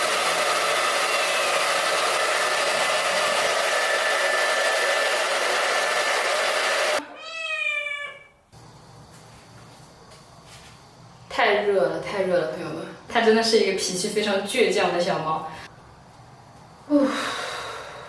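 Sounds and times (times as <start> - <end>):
hair dryer blowing: 0.0 - 7.0
cat meowing: 7.0 - 8.4.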